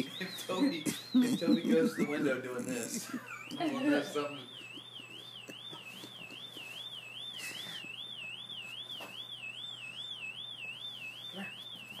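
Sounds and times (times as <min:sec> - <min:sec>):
high-pitched warbling whistle tone: 0:00.0 - 0:02.3.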